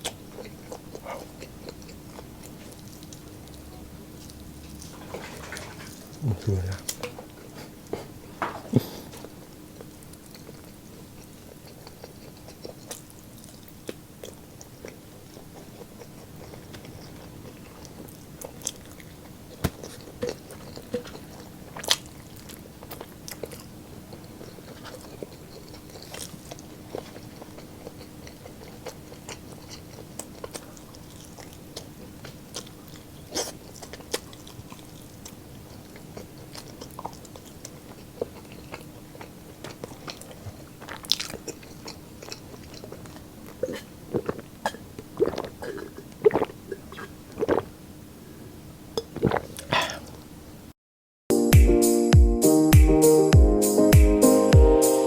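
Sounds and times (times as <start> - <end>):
faint hum: 0.0 - 33.0
chewing with crunches: 0.0 - 50.4.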